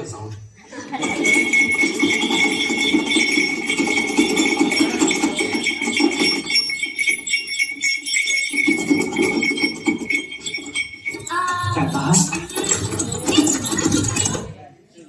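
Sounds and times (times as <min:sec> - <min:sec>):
small metal jingles shaken: 0:00.9 - 0:14.6.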